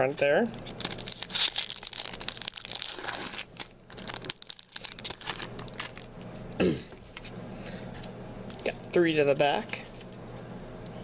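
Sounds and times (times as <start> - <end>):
foil wrapper crinkling and tearing: 0.6 - 6.1.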